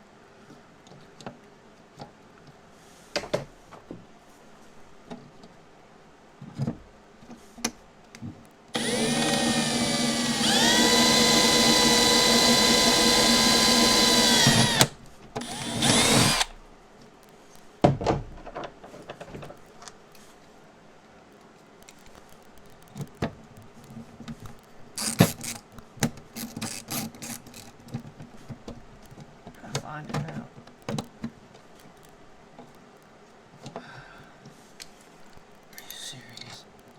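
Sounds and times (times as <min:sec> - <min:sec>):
power drill whining: 0:08.8 - 0:16.6, 0:25.0 - 0:25.2.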